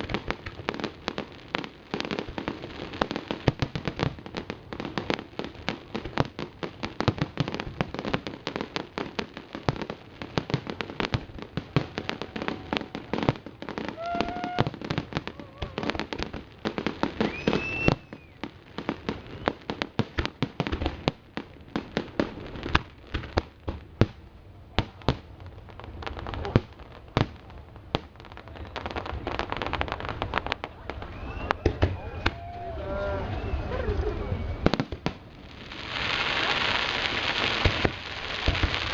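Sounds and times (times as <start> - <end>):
fireworks bangs and crackling: 0.0 - 38.9
firework whistles: 13.8 - 16.0, 17.1 - 18.5, 30.9 - 35.0.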